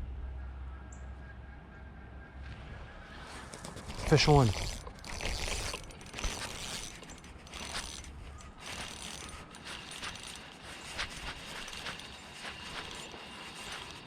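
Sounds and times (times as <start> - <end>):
reel drag clicking: 3.3 - 14.0
fishing reel cranking: 3.5 - 14.0.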